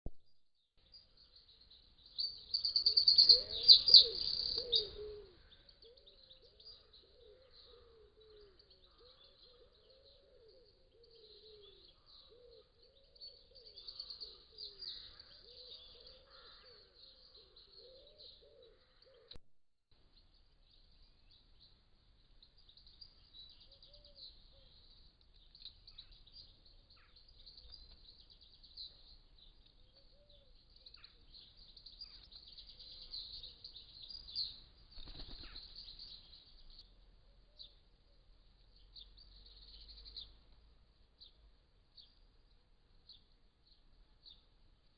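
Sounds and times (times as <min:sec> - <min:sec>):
birds chirping: 0:00.9 - 0:19.4, 0:22.4 - 0:38.1
lower bird calls: 0:02.1 - 0:19.4, 0:29.9 - 0:40.4.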